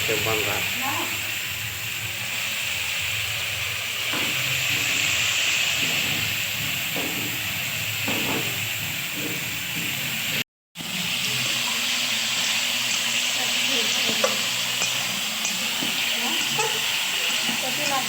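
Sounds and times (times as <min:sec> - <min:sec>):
curry sizzling in a pot: 0:00.0 - 0:18.0.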